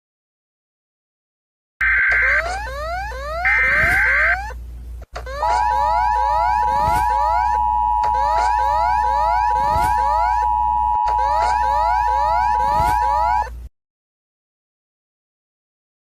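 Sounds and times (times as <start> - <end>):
two-tone alert signal: 5.3 - 13.5
rising siren sweeps: 5.4 - 13.5.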